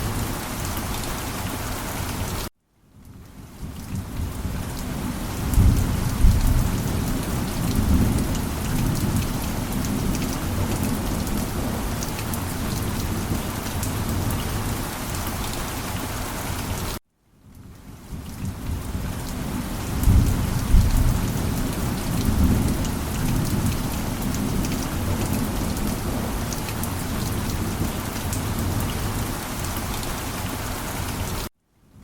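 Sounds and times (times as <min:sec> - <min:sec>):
heavy rain: 0:00.0 - 0:17.0, 0:17.6 - 0:31.5
thunder rumbling: 0:03.8 - 0:14.8, 0:18.4 - 0:29.8.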